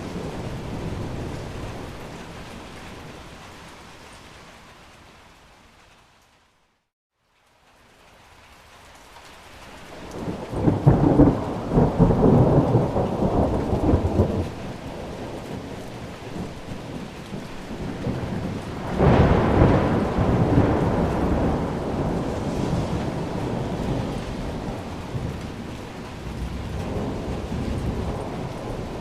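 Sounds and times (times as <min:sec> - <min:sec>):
heavy rain: 0:00.0 - 0:29.0
rolling thunder rumble: 0:10.0 - 0:29.0.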